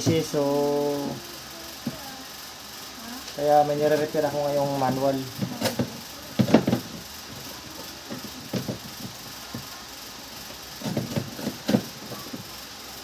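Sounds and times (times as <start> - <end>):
hard parts knocking and rattling: 0.0 - 1.2, 3.4 - 12.6.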